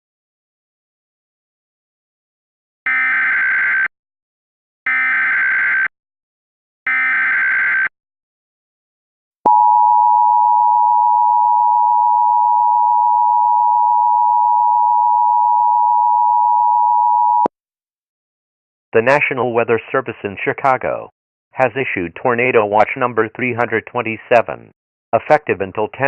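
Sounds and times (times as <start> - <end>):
steady two-tone attention signal: 9.5 - 17.5.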